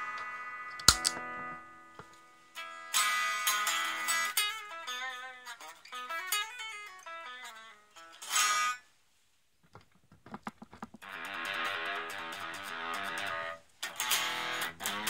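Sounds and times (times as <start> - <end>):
overdriven electric guitar: 0.0 - 8.7, 11.0 - 15.0
muted guitar string clicks: 0.7 - 1.2.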